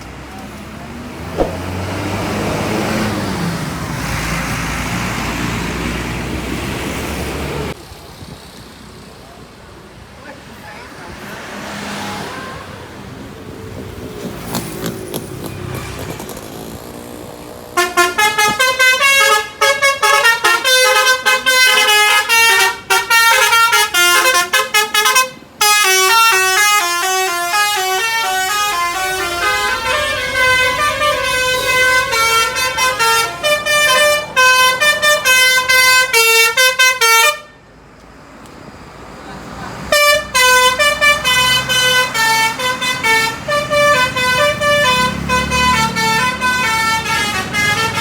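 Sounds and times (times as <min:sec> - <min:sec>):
vehicle noise: 0:00.0 - 0:48.0
musical bus horn melody: 0:17.8 - 0:37.6, 0:39.9 - 0:48.0.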